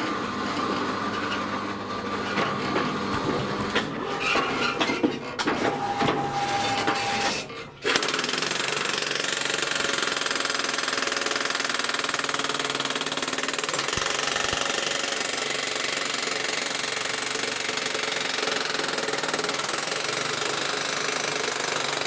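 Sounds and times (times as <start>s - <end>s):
jackhammer hammering: 5.7s - 22.0s.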